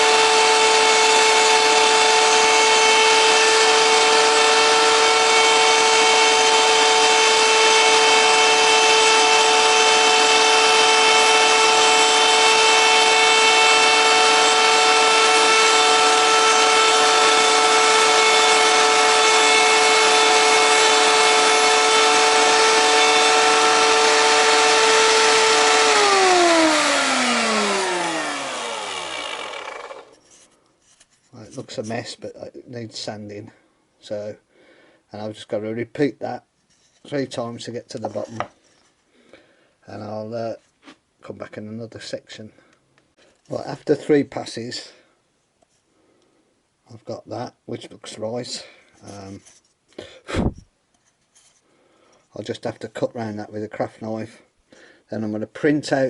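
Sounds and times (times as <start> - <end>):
router high whine cutting wood: 0.0 - 30.2
router motor spinning down: 0.0 - 30.2.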